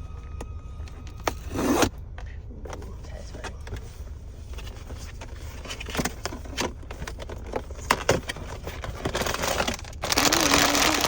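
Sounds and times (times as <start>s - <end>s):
plastic and card crackling: 4.6s - 11.0s
wrapping crinkling: 8.7s - 11.0s.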